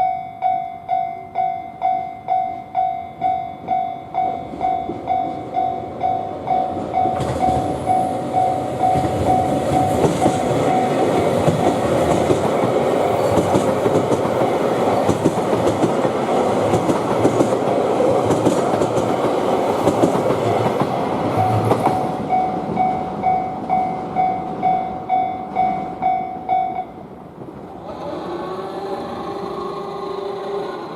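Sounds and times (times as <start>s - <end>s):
level crossing bell clanging: 0.0s - 11.2s, 21.4s - 27.0s
train rumbling and wheels clattering: 0.0s - 30.9s.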